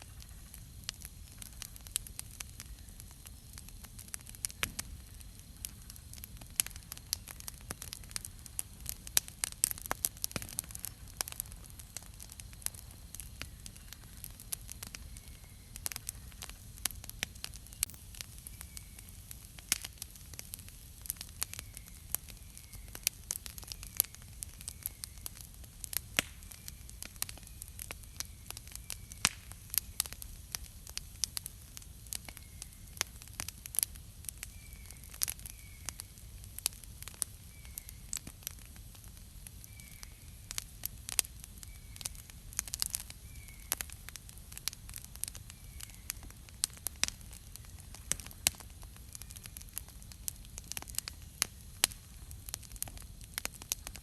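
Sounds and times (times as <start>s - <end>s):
campfire crackling and popping: 0.0s - 54.0s
faint hiss of burning: 0.0s - 54.0s.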